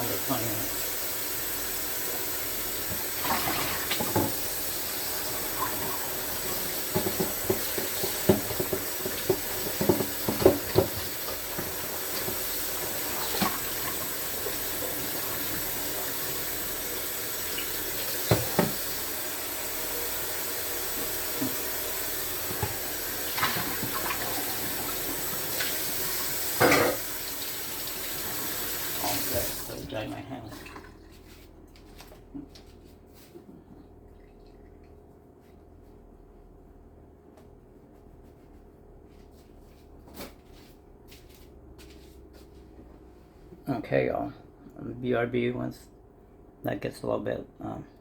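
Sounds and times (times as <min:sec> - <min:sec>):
tap running: 0:02.8 - 0:19.2, 0:20.9 - 0:29.4.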